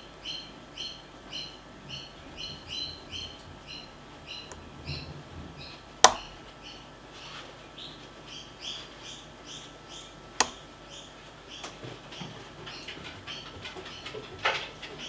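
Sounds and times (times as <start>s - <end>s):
lock pick metallic clicks: 6.0s - 6.3s, 10.4s - 10.7s.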